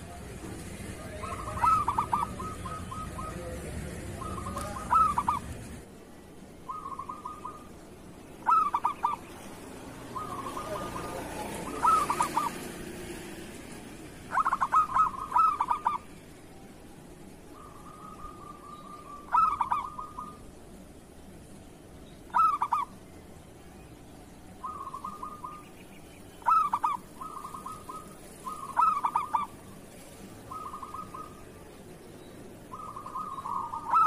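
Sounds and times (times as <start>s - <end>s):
dove cooing: 0.0s - 5.8s, 6.7s - 13.1s, 14.2s - 16.2s, 17.5s - 20.5s, 22.3s - 23.0s, 24.5s - 31.9s, 32.6s - 34.0s.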